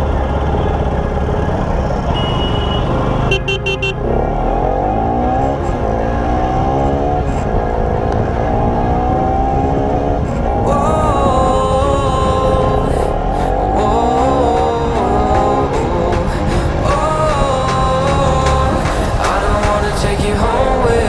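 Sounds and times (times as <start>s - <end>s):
motorcycle engine accelerating: 0.0s - 10.6s
horn beeping: 2.1s - 9.2s.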